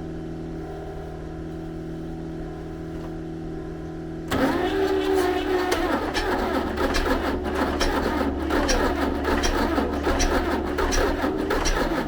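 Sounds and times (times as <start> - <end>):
diesel tractor engine idling: 4.3 - 12.0.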